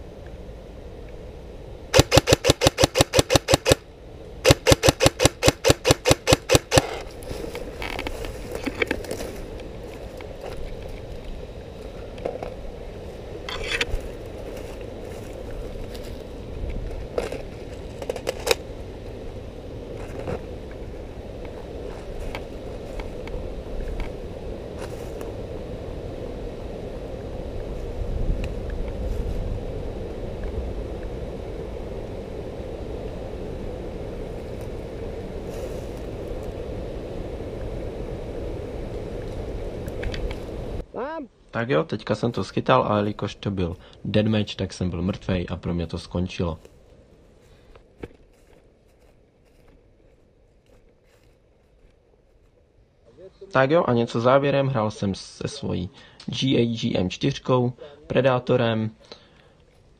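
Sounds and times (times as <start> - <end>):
airsoft rifle rapid shots: 2.0 - 3.8, 4.4 - 7.0.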